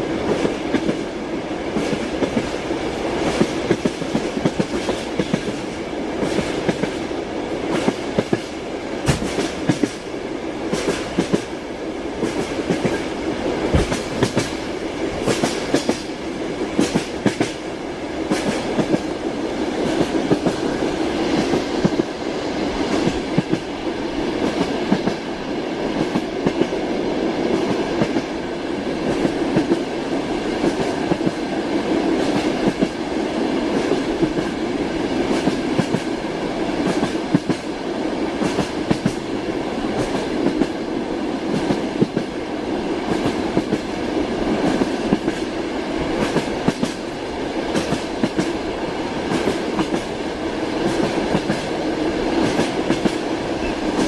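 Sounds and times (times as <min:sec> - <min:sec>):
train rumbling on rails: 0:00.0 - 0:54.0.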